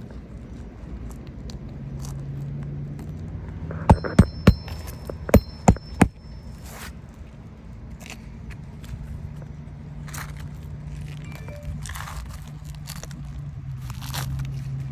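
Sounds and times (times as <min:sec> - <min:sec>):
hammer striking roofing nails: 0:03.9 - 0:06.2.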